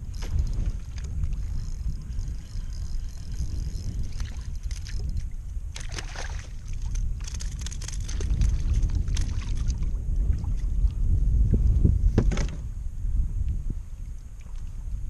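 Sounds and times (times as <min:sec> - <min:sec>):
wind rumbling on microphone: 0:00.0 - 0:15.0
water splashing at kayak: 0:05.7 - 0:07.0.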